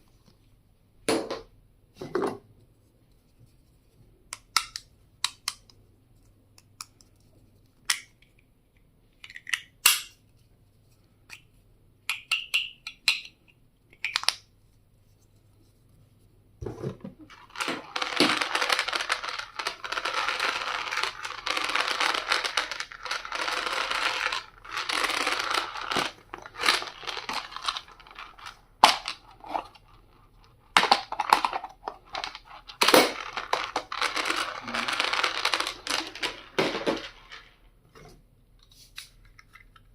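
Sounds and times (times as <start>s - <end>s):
packaging crinkling and rustling: 17.2s - 37.5s.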